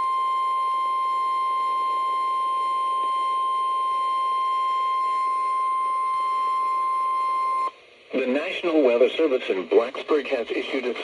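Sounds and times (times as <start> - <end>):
radio static hiss: 8.0 - 11.0.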